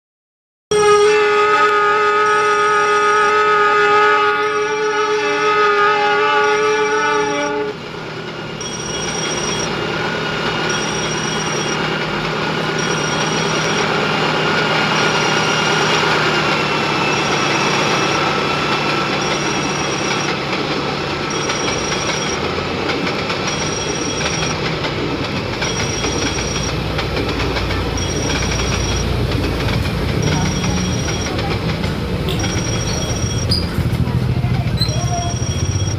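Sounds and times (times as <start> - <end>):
locomotive horn chord: 0.7 - 7.8
train running on rails: 0.7 - 35.9.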